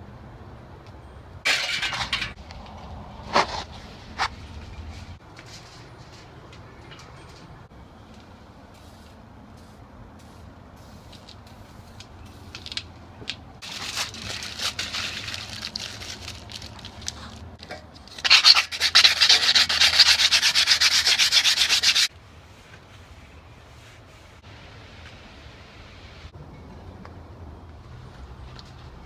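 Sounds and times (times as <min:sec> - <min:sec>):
hand sanding strokes: 0:18.3 - 0:24.4.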